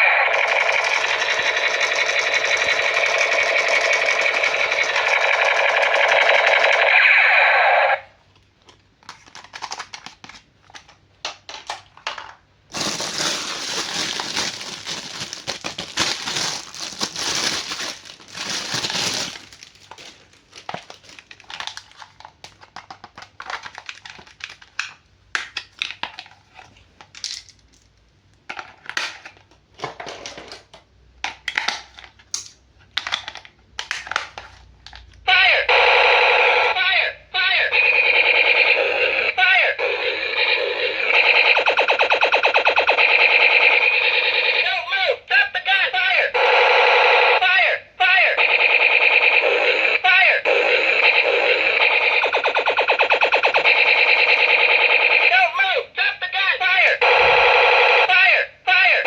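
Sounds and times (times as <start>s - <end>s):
plastic packaging crinkling: 8.7s - 11.0s, 12.7s - 25.1s.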